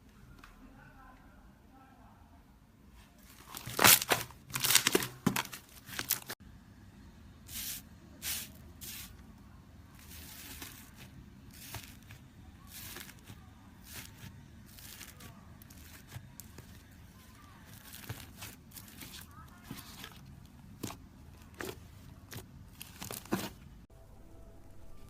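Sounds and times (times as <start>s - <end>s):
slime crackling and squelching: 3.3s - 6.4s, 10.0s - 23.5s.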